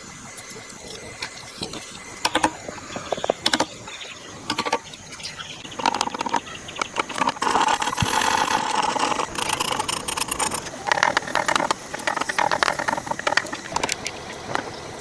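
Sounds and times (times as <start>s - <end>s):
tool clicks and knocks on wood: 1.2s - 3.8s, 4.5s - 4.9s, 5.7s - 14.7s
rhythmic rasping on wood: 5.6s - 14.7s.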